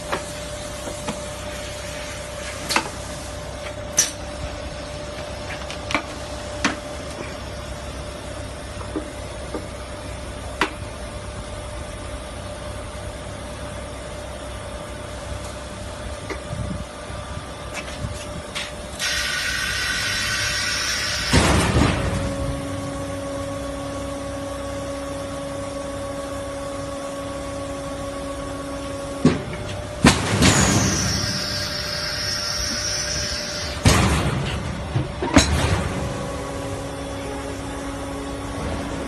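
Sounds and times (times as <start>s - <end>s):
welding machine hum: 18.9s - 35.0s.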